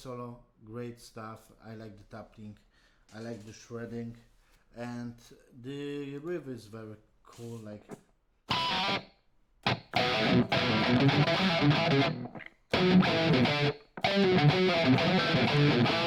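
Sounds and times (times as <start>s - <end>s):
distorted electric guitar riff: 8.5s - 16.0s.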